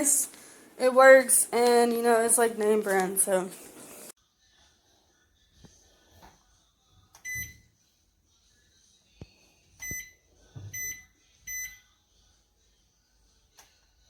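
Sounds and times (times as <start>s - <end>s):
short high keypad beeps: 7.2s - 7.6s.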